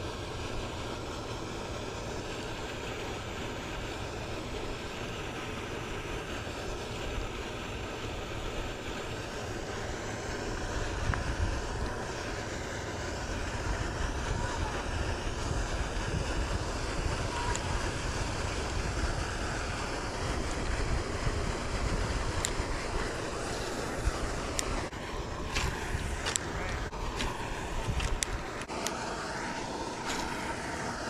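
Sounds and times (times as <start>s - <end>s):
wind buffeting microphone: 10.4s - 12.2s, 13.3s - 28.7s.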